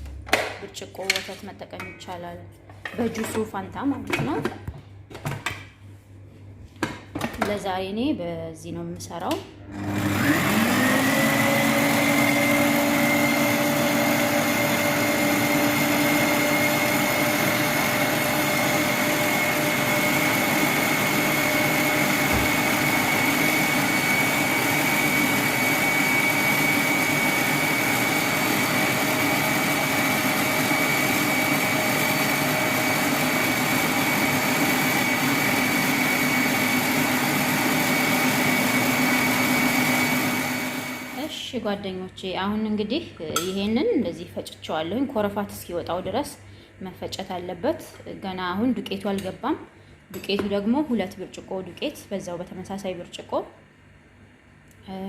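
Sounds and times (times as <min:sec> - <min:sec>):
electric mixer beating batter: 0:09.7 - 0:41.3.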